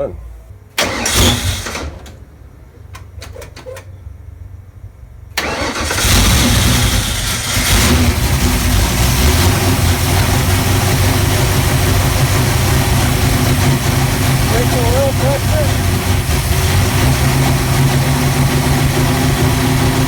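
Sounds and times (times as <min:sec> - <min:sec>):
car engine idling: 0:00.0 - 0:20.0
low rumble: 0:07.6 - 0:20.0.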